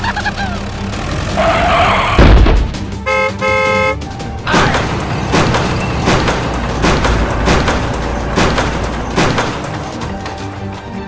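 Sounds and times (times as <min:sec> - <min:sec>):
vehicle horn beeps: 0:03.0 - 0:04.0.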